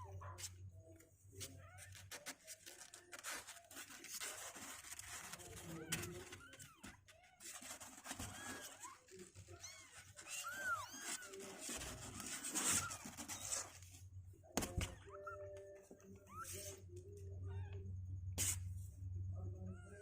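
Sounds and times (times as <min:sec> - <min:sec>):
rustling: 0:00.2 - 0:16.9
kittens mewing: 0:01.4 - 0:13.8.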